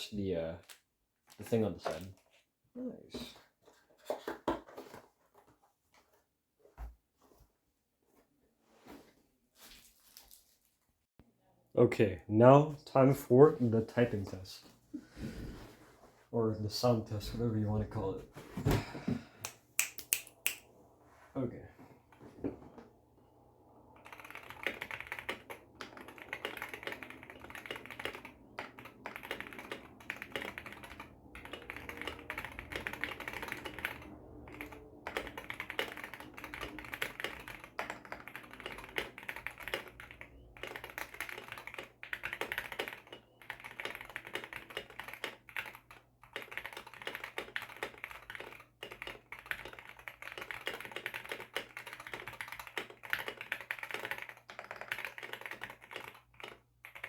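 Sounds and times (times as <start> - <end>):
fast keyboard typing: 23.8 - 57.0.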